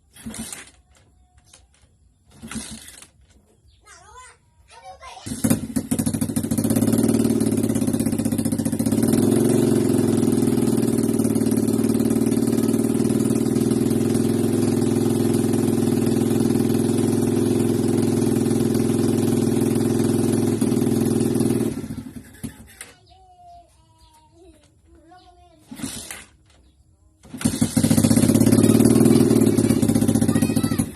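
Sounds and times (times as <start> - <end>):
old motorcycle engine running: 0.1 - 1.0, 1.7 - 3.0, 5.3 - 23.0, 27.2 - 30.9.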